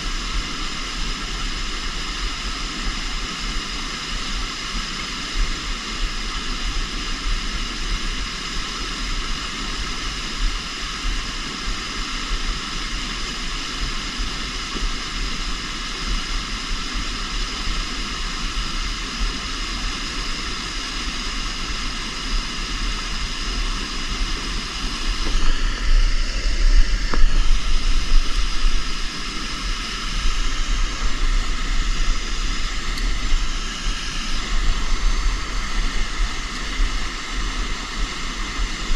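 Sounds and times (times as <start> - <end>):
river water rushing: 20.4 - 38.9.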